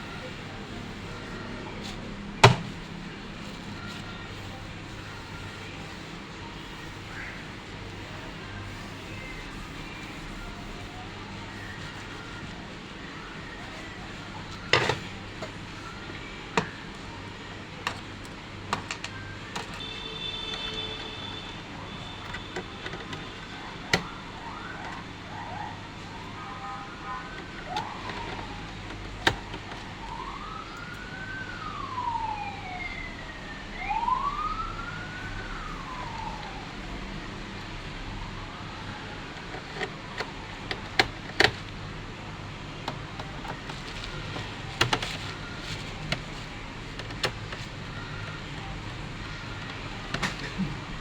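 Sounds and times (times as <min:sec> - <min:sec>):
siren wailing: 0:23.1 - 0:37.5.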